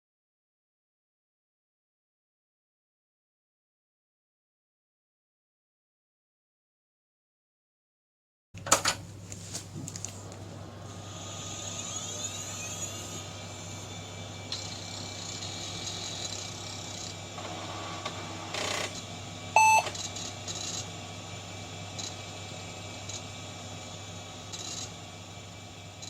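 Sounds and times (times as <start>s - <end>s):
computer fan humming: 8.6s - 26.0s
computer speaker beep: 19.6s - 19.9s.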